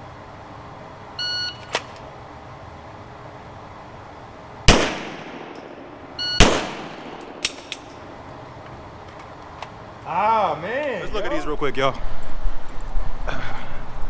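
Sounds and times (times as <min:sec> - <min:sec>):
short beep: 0:01.2 - 0:01.7, 0:06.2 - 0:06.4
pistol shots: 0:04.7 - 0:07.9.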